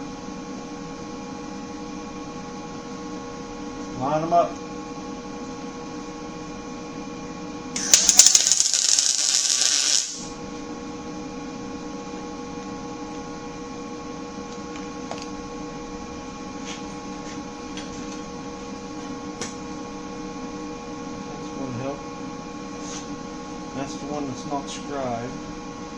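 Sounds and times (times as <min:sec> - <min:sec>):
electrical hum: 0:07.6 - 0:11.1
arc welder crackling: 0:07.8 - 0:10.3.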